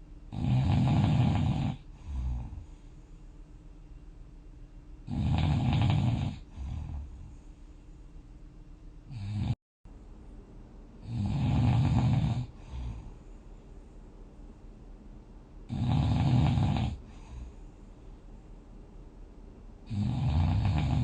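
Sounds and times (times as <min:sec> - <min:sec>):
person snoring: 0:00.3 - 0:02.8, 0:05.0 - 0:07.4, 0:09.1 - 0:09.6, 0:11.0 - 0:13.2, 0:15.7 - 0:17.6, 0:19.8 - 0:21.0.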